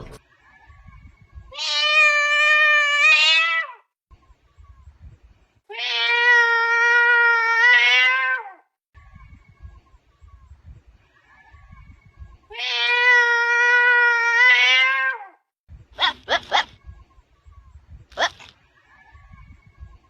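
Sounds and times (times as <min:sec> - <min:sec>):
cat meowing: 0:01.5 - 0:03.8, 0:05.7 - 0:08.7, 0:12.5 - 0:15.4.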